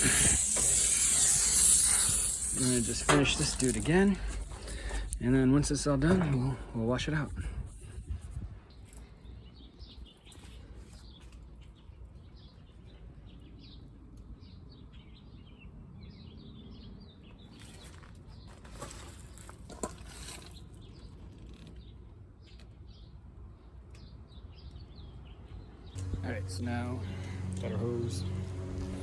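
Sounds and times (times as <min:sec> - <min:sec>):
brief hissing bursts: 0:00.0 - 0:05.2
songbirds chirping: 0:08.2 - 0:29.0.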